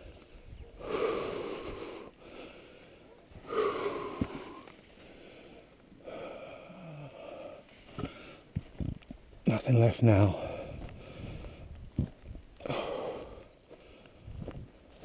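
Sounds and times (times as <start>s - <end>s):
person breathing heavily: 0.0s - 8.6s, 10.3s - 11.8s, 12.6s - 15.0s
voiced sigh: 0.8s - 8.4s, 12.6s - 14.1s.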